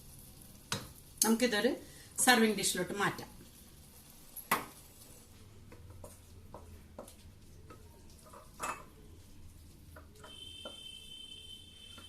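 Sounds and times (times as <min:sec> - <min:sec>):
spoon scraping and clinking pan: 0:08.2 - 0:08.9
faint high-pitched tone: 0:10.2 - 0:12.0.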